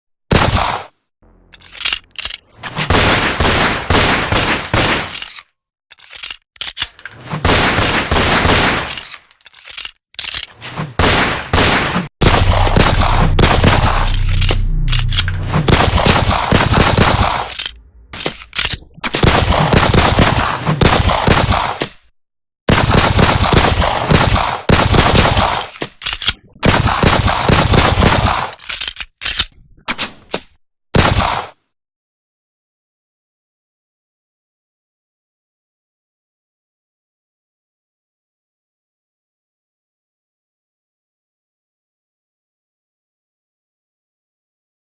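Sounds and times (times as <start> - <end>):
gunshots and bursts of gunfire: 0.3 - 1.0, 1.9 - 5.4, 7.3 - 9.2, 10.3 - 22.1, 22.7 - 30.1, 31.0 - 31.6
heavy low boom: 12.2 - 18.2.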